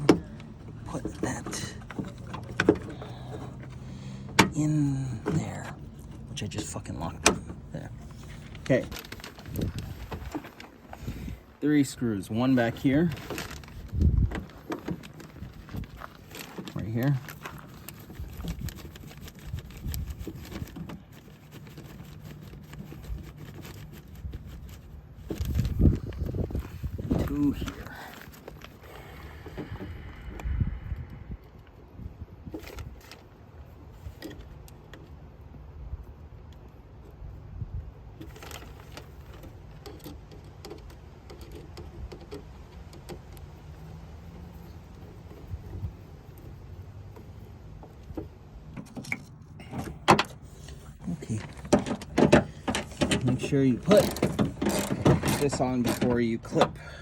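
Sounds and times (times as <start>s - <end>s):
steady low rumble: 25.4s - 32.5s.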